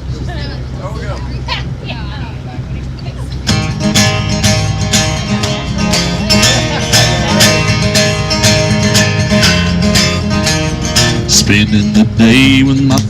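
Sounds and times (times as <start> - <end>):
acoustic guitar: 3.2 - 13.0
steady drum beat: 3.5 - 13.0.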